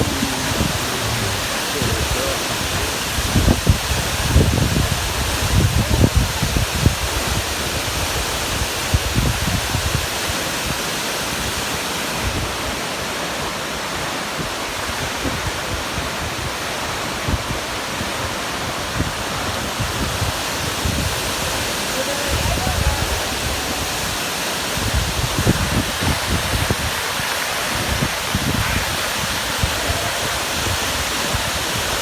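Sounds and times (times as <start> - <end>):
wind buffeting microphone: 0.0 - 10.2, 18.9 - 32.0
waterfall roaring: 0.0 - 32.0.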